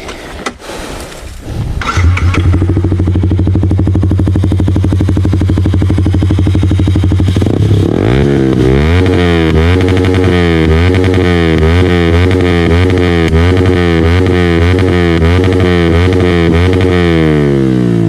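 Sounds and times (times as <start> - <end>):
motorcycle engine idling and revving: 1.7 - 18.0.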